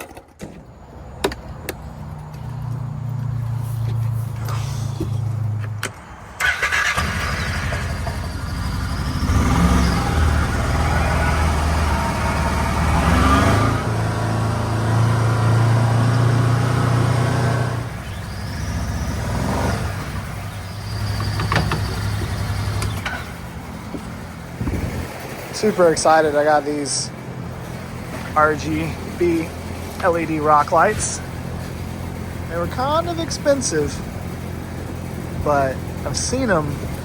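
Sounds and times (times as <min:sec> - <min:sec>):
engine revving: 0:06.4 - 0:26.4.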